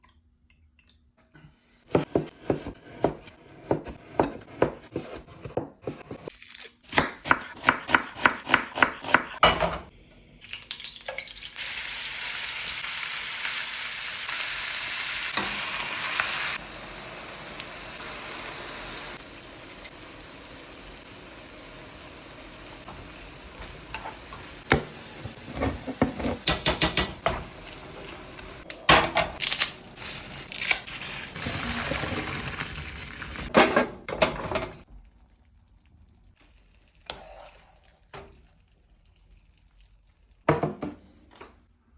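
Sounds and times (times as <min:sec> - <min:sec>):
chopping on cutting board: 0:01.9 - 0:06.2, 0:06.9 - 0:09.4
meat sizzling in a pan: 0:10.7 - 0:24.5.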